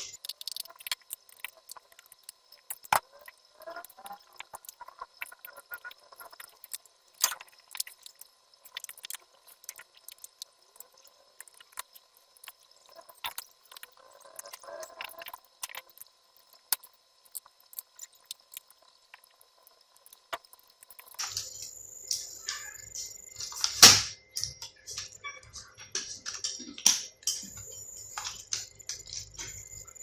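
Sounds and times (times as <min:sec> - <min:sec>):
laptop parts clicking and tapping: 0:20.1 - 0:30.0.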